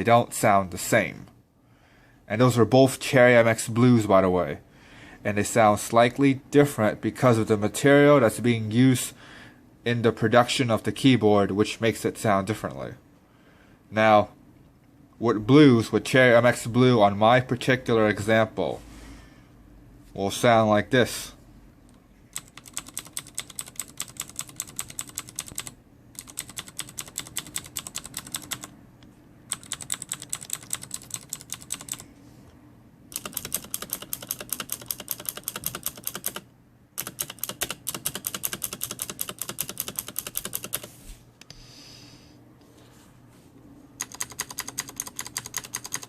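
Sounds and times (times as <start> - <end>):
clicky keyboard typing: 22.3 - 28.7, 29.5 - 32.0, 33.1 - 36.4, 37.0 - 40.9, 44.0 - 46.0.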